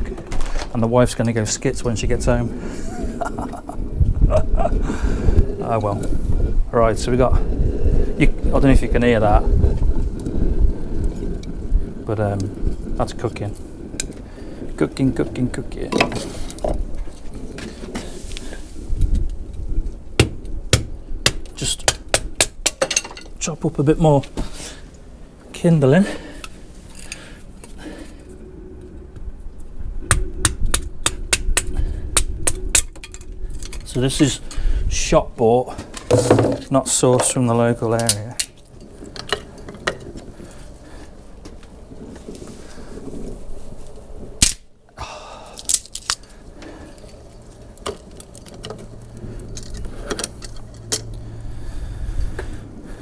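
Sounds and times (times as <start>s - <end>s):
burning kindling crackling: 0.0s - 53.0s
low steady hum: 0.0s - 53.0s
wood being handled: 45.6s - 51.2s.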